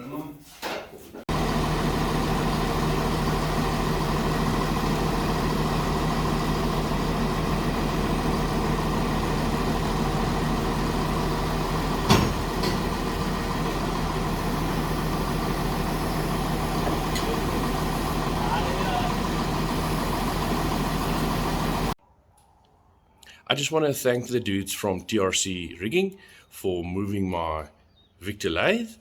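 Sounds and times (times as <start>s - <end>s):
machine running steadily: 1.3s - 22.0s.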